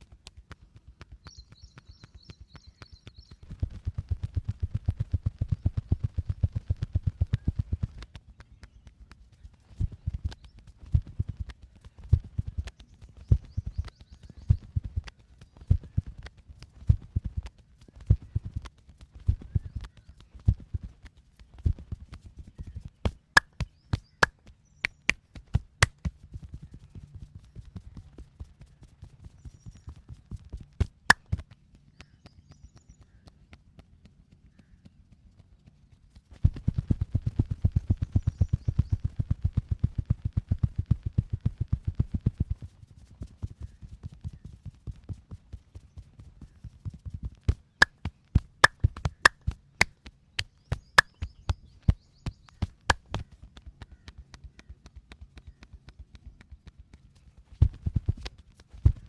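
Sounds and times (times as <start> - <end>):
hands drumming on body: 24.9 - 25.2
sharp slaps: 24.9 - 25.2.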